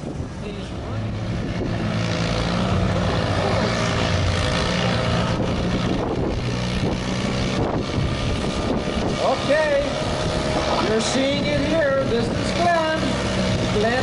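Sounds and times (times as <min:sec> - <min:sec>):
lawn tractor engine running: 0:00.7 - 0:14.0.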